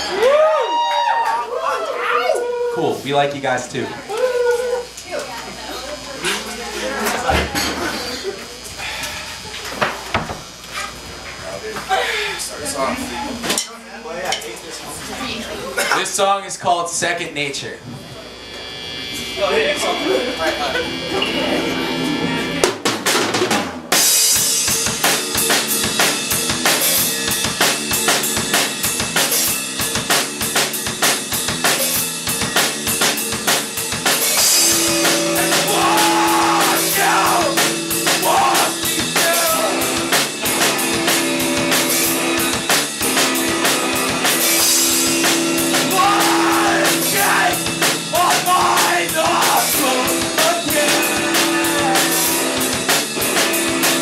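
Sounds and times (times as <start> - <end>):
live rock band playing: 17.9 - 54.0
bending guitar melody: 18.0 - 22.9, 24.0 - 54.0.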